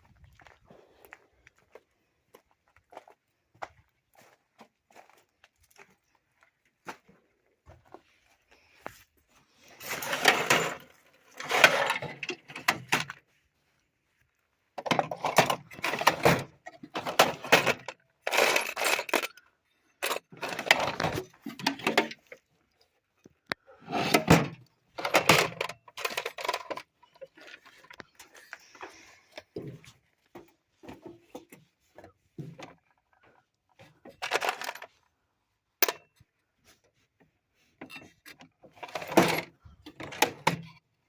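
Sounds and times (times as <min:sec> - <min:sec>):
metal hardware rattling in drawer: 0:09.8 - 0:13.1, 0:14.8 - 0:19.4, 0:20.0 - 0:22.3, 0:24.0 - 0:28.0, 0:34.1 - 0:34.9, 0:37.9 - 0:40.7.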